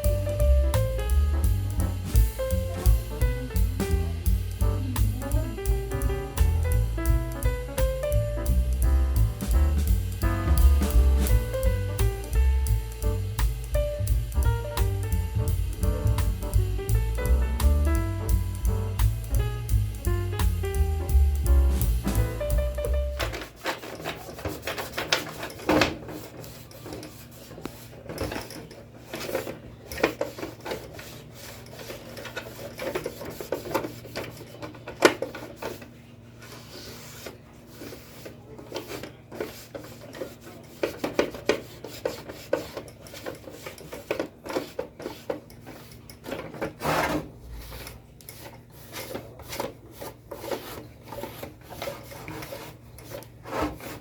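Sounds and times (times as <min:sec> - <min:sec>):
faint low hum: 0:00.0 - 0:23.4
rubbing and scraping on plastic casing: 0:23.1 - 0:54.0.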